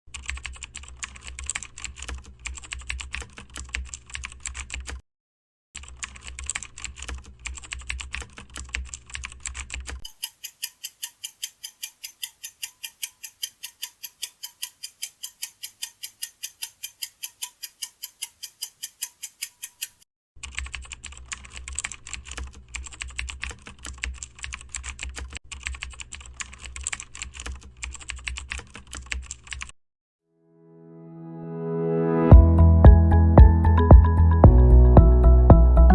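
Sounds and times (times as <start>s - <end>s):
computer keyboard typing: 0.1s - 5.0s, 5.8s - 29.7s.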